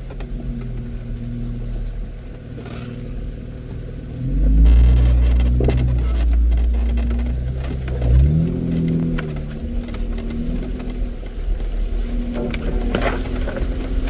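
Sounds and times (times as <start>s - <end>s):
off-road vehicle engine running: 0.0s - 14.0s
knocks and clicks: 4.5s - 13.9s.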